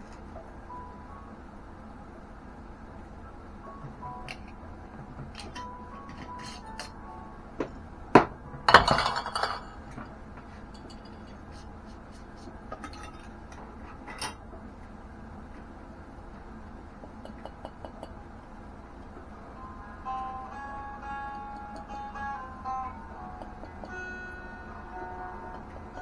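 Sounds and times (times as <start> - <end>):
glass jars clinking: 5.2 - 7.0, 8.2 - 11.7, 12.8 - 14.4
glass jars rattling: 5.2 - 7.0, 8.6 - 11.7, 12.8 - 14.4.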